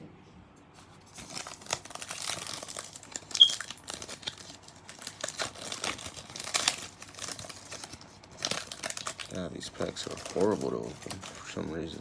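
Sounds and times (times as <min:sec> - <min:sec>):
wrapper crinkling and tearing: 0:00.8 - 0:12.0.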